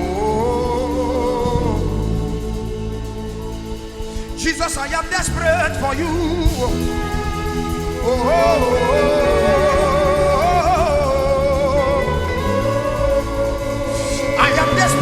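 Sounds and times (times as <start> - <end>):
held backing chords: 0.0 - 15.0
person singing a long note: 6.1 - 15.0.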